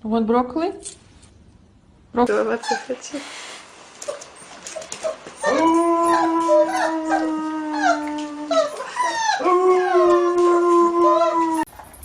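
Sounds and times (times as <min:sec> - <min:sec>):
dog howling: 0:05.4 - 0:11.7.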